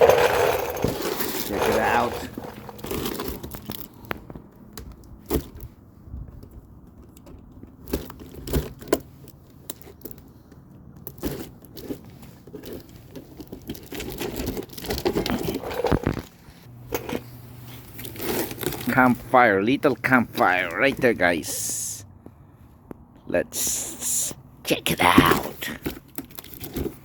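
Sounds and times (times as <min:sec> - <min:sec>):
cardboard tearing and crinkling: 0:00.0 - 0:03.9, 0:13.5 - 0:16.3, 0:17.9 - 0:18.9.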